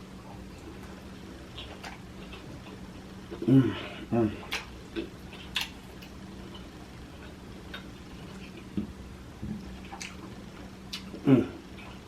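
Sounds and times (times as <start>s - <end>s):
low steady hum: 0.0s - 12.0s
faint chewing: 0.2s - 12.0s
mouth clicks and lip smacks: 4.5s - 6.2s.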